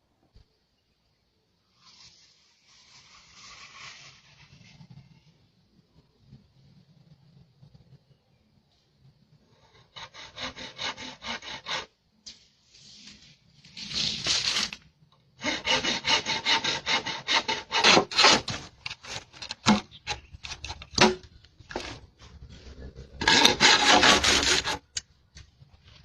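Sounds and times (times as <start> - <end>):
handsaw cutting through wood: 9.9 - 11.9, 15.4 - 20.7, 23.2 - 24.9.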